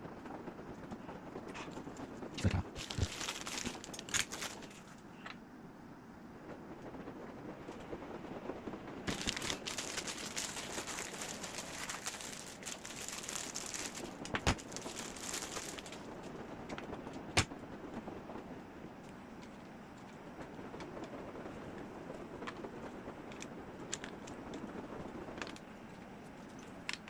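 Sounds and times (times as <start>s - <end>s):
plastic wrapping crinkling: 2.6s - 5.0s, 9.1s - 16.3s.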